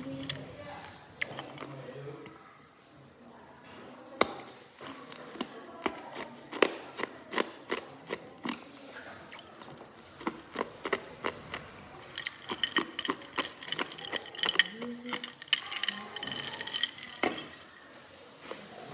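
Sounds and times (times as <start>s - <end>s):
ice being chewed: 0.0s - 2.4s, 4.7s - 18.9s.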